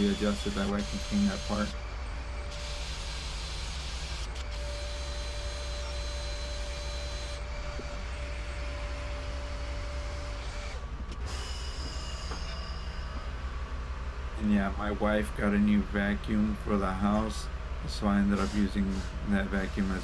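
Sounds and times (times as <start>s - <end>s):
vacuum cleaner running: 0.0s - 10.9s.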